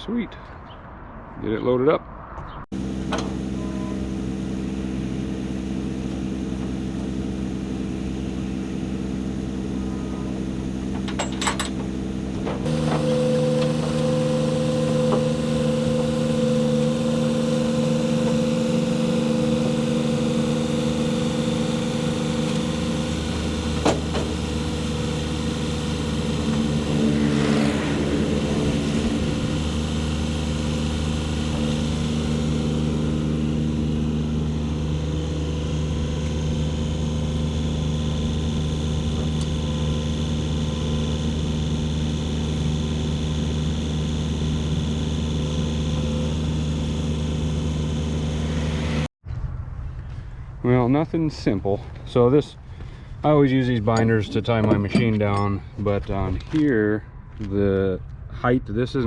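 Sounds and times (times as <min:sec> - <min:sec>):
excavator diesel engine running: 0:02.7 - 0:49.1.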